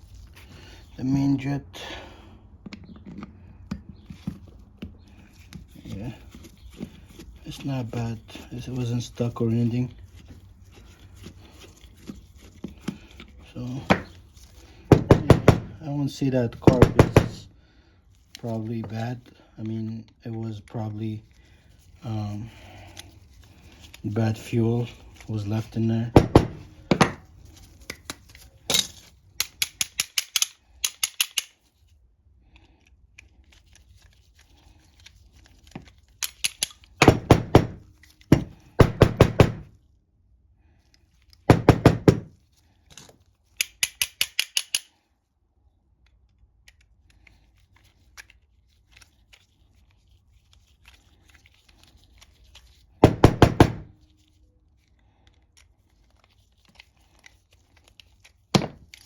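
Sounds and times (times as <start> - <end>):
metal tools clicking on carburetor: 28.7 - 31.6, 43.6 - 44.9.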